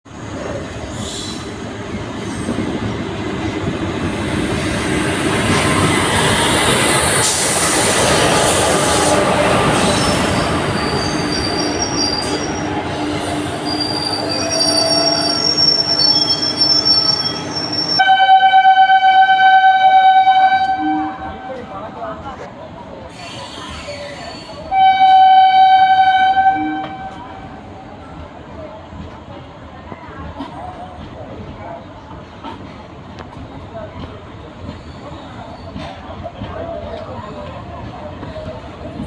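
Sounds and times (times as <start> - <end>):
train rolling on rails: 0.1 - 39.0
high-pitched wheel squeals: 5.8 - 18.0
steady horn tone: 7.2 - 21.4.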